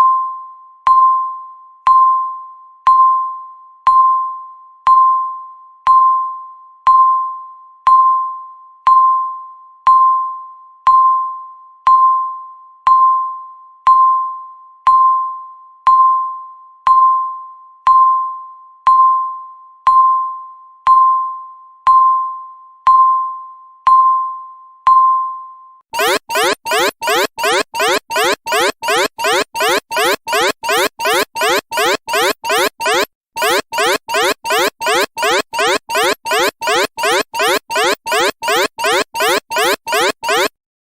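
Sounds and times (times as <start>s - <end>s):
countdown timer beeping: 26.0s - 40.6s
timer alarm rising sweeps: 26.0s - 40.6s.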